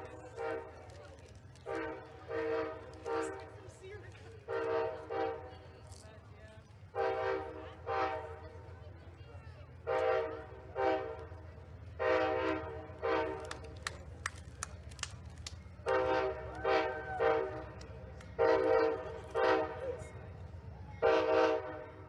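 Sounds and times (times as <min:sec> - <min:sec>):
locomotive air horn blasts: 0:00.3 - 0:00.9, 0:01.6 - 0:03.6, 0:04.4 - 0:05.7, 0:06.9 - 0:08.5, 0:09.8 - 0:11.4, 0:12.0 - 0:13.6, 0:15.8 - 0:17.8, 0:18.4 - 0:20.2, 0:21.0 - 0:22.0.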